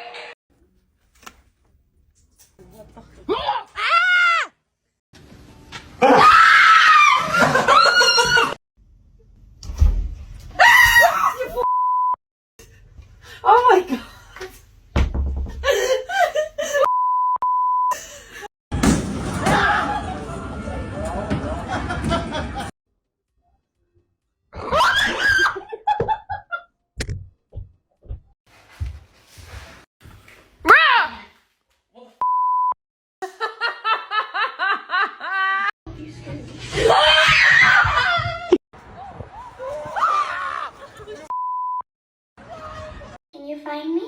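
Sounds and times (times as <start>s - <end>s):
person laughing: 33.2s - 35.7s.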